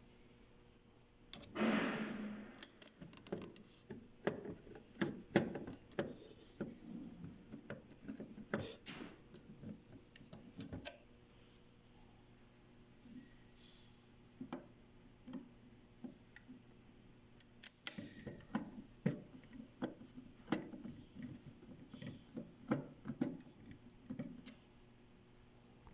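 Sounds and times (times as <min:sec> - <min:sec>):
plastic parts clicking and knocking: 0:02.6 - 0:11.0, 0:17.6 - 0:24.6.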